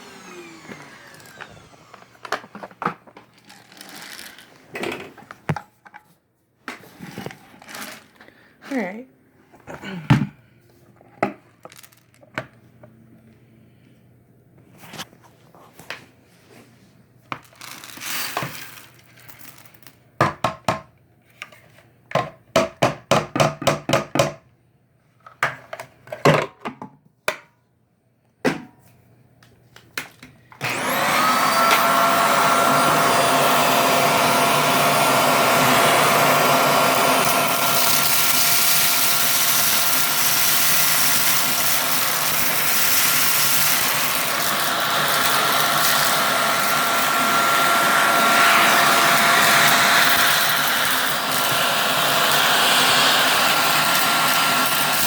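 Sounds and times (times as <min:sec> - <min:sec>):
vacuum cleaner motor whine: 0:00.0 - 0:05.0, 0:30.6 - 0:55.0.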